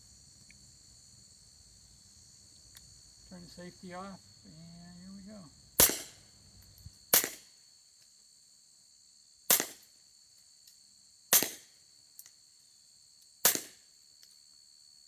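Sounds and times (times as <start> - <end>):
suppressed pistol shots: 5.8 - 6.2, 7.1 - 7.4, 9.5 - 9.8, 11.3 - 11.6, 13.4 - 13.8.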